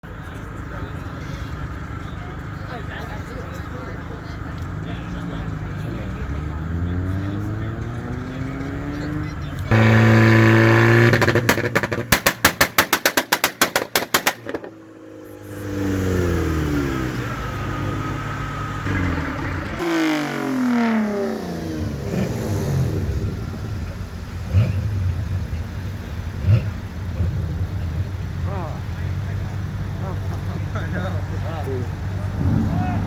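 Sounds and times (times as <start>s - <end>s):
car engine revving: 0.2s - 33.0s
sharp exhaust pops: 9.6s - 14.8s.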